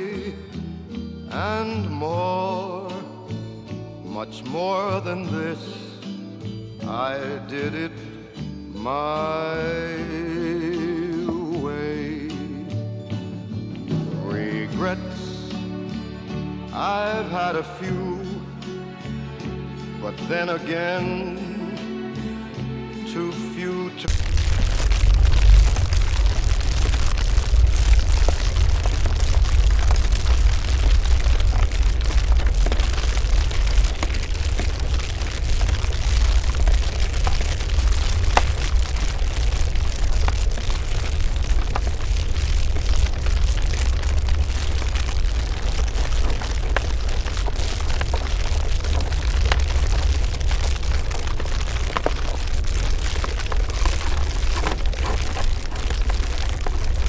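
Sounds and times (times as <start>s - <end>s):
crackles and pops: 10.9s - 11.8s, 24.1s - 57.0s
deep rumble: 24.1s - 57.0s.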